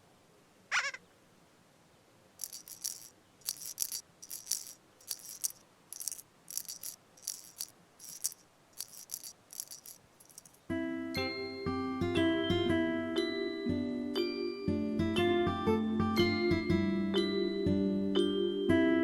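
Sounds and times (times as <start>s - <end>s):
shaker rattling in rhythm: 2.4s - 10.7s.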